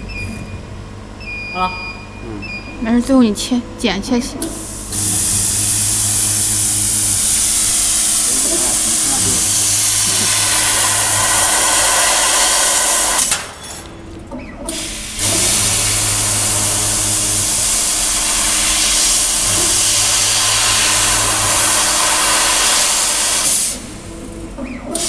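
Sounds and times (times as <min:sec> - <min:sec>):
low hum: 0:00.0 - 0:13.3, 0:15.1 - 0:24.7
laser cutter hissing: 0:04.4 - 0:13.6, 0:14.7 - 0:24.2.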